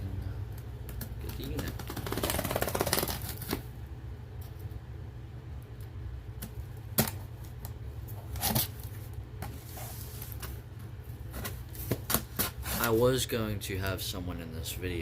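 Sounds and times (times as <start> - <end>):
packaging rustling: 1.2 - 3.7.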